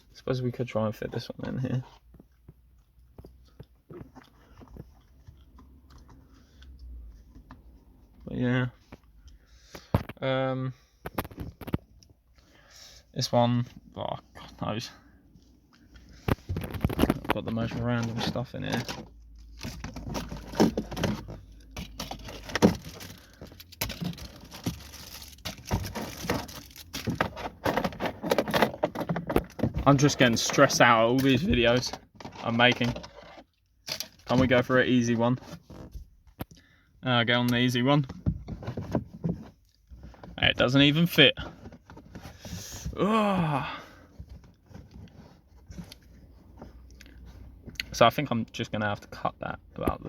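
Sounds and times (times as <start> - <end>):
items rattling in car compartment: 16.0 - 36.3, 37.3 - 47.7.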